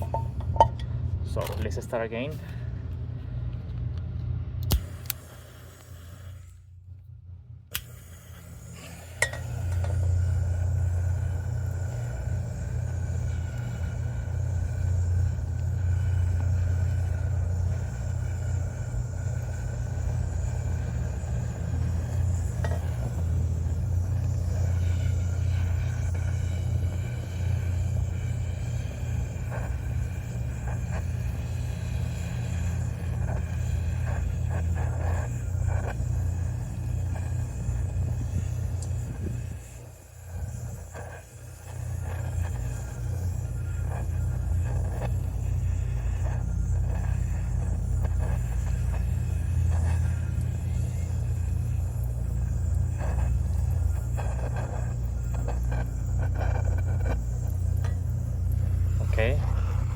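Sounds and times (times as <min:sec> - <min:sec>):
torch igniter clicks: 0:00.0 - 0:07.1, 0:07.7 - 0:59.9
flame burning with low rumble: 0:00.0 - 0:59.9.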